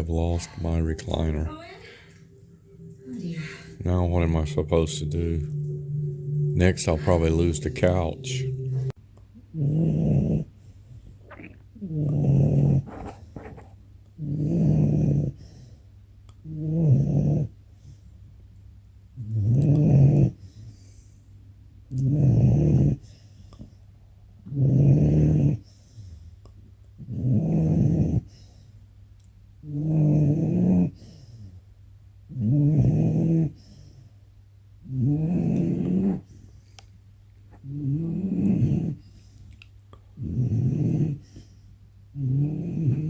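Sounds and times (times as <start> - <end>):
puppy snoring: 0.0 - 13.5, 14.2 - 15.8, 16.4 - 18.0, 19.2 - 21.0, 21.9 - 23.7, 24.4 - 26.4, 27.0 - 28.7, 29.6 - 31.6, 32.3 - 34.0, 34.8 - 36.8, 37.5 - 39.4, 40.2 - 43.0
quiet breaths: 12.0 - 18.6, 19.2 - 43.0.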